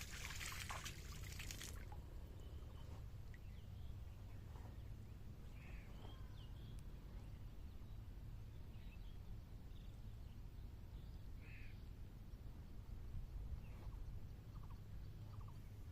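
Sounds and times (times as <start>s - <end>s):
low steady rumble: 0.0s - 15.9s.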